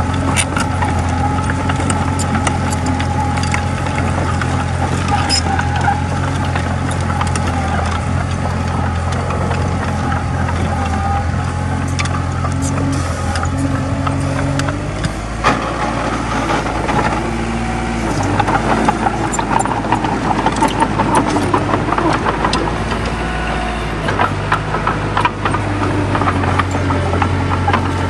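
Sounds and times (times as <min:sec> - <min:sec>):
bulldozer diesel engine running: 0:00.0 - 0:28.0
clanking and rattling: 0:00.0 - 0:28.0.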